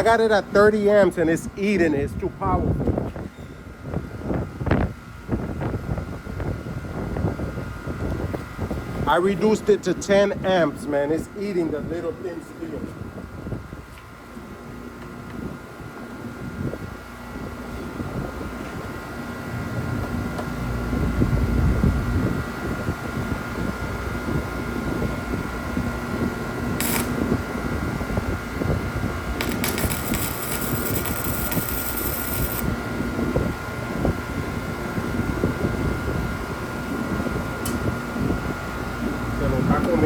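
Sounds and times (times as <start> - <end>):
welder fan humming: 0.0 - 40.0
welding arc crackle: 26.8 - 27.3, 29.3 - 32.8.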